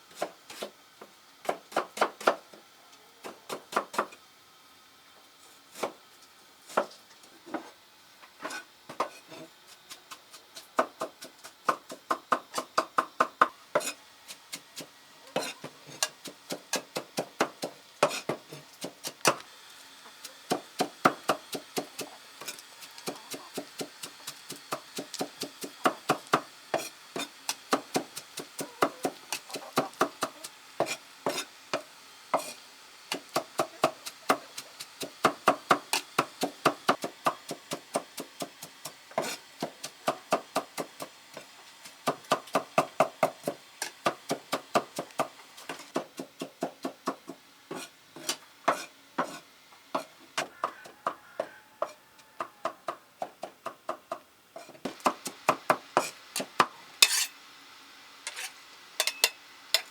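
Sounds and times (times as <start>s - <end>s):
knife chopping on wooden board: 1.4s - 2.4s, 3.2s - 4.1s, 8.5s - 9.2s, 42.0s - 49.4s.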